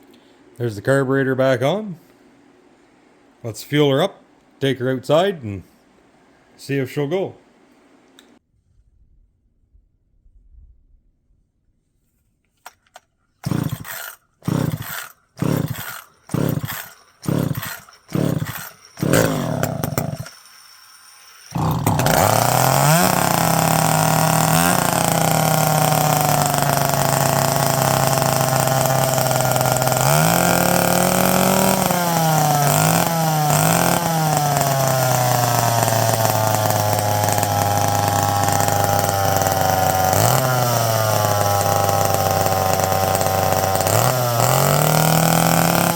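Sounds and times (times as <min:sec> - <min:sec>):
starter cord pulls: 0:12.6 - 0:20.4, 0:21.6 - 0:45.9
chainsaw engine running and revving: 0:13.4 - 0:20.3, 0:21.5 - 0:45.9.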